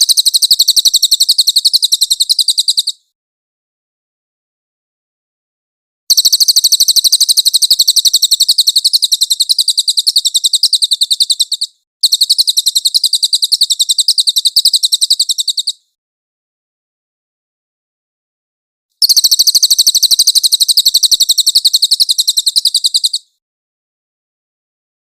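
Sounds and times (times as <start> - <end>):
bird trilling: 0.0 - 3.0, 6.1 - 15.8, 19.0 - 23.3.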